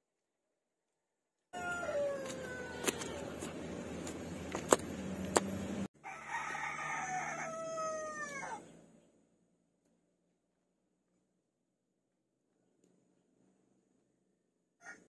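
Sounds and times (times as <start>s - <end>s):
rooster crowing: 1.6s - 3.4s, 5.9s - 8.7s, 14.8s - 15.0s
steady background noise: 1.6s - 5.9s.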